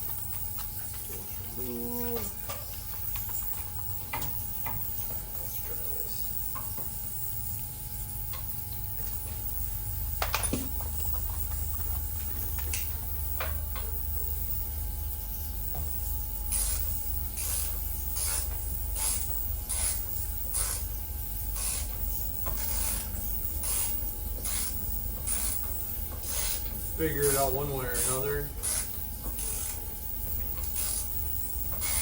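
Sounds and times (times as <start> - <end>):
steady low hum: 0.0 - 32.0
ratchet wrench clicking: 16.5 - 20.9, 21.5 - 29.9, 30.5 - 32.0.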